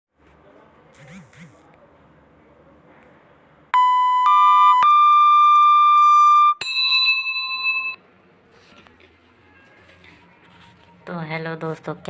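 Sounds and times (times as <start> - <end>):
electronic beep tone: 3.8 - 6.6.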